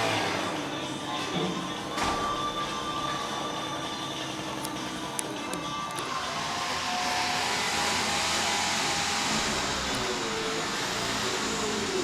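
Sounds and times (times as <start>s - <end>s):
motor running: 6.0s - 12.0s.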